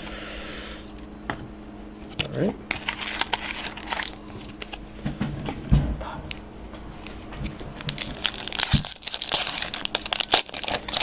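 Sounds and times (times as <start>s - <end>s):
card packs crinkling and rustling: 2.7s - 4.8s, 7.8s - 11.0s.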